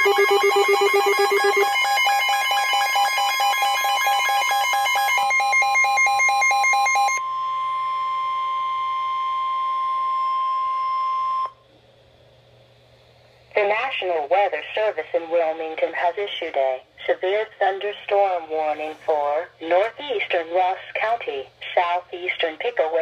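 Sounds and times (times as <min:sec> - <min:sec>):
trilling electronic warble: 0:00.0 - 0:06.2
steady high alert tone: 0:00.0 - 0:11.5.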